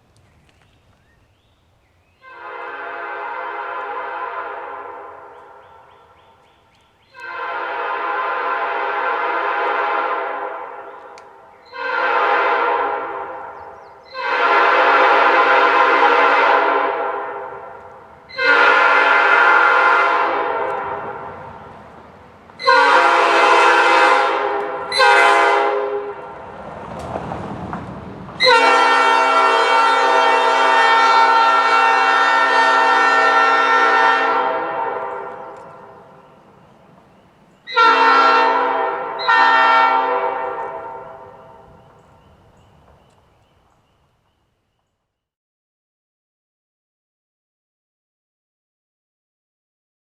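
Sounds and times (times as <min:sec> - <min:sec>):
train air horn blasts: 0:02.2 - 0:06.2, 0:07.1 - 0:21.6, 0:22.6 - 0:26.4, 0:28.4 - 0:36.4, 0:37.7 - 0:41.8.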